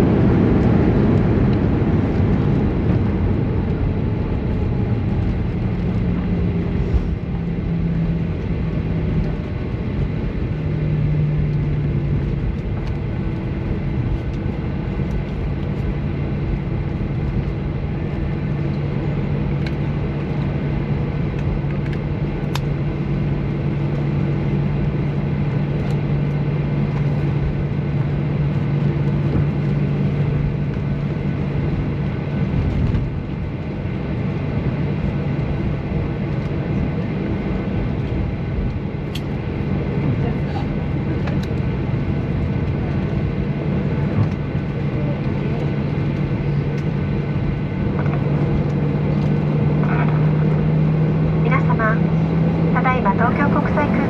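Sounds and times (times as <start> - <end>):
airplane cabin engine drone: 0.0 - 54.0.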